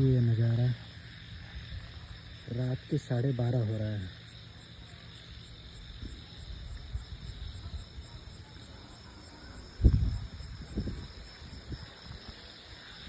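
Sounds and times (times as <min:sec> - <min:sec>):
crickets chirping: 0:00.0 - 0:13.0
wind rumble on microphone: 0:05.8 - 0:08.5, 0:09.4 - 0:13.0.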